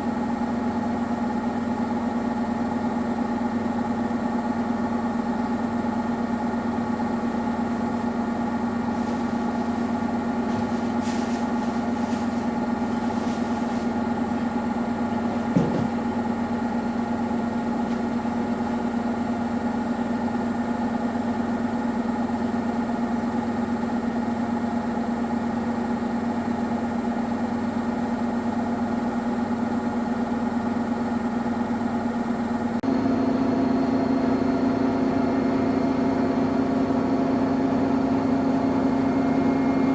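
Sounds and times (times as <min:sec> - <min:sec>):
washing machine motor hum: 0:00.0 - 0:39.9
washing machine knock: 0:14.3 - 0:16.2.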